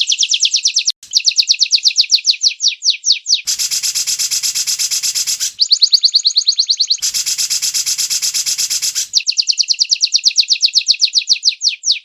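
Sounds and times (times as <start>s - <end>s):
bird song trill: 0.0s - 12.0s
harsh rasping rattle: 3.5s - 5.6s, 7.0s - 9.1s.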